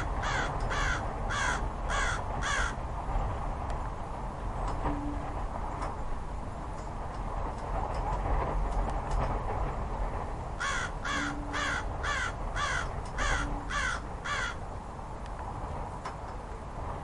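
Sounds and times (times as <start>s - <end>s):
crow cawing: 0.0s - 2.8s, 10.6s - 14.6s
low ambient rumble: 0.0s - 17.0s.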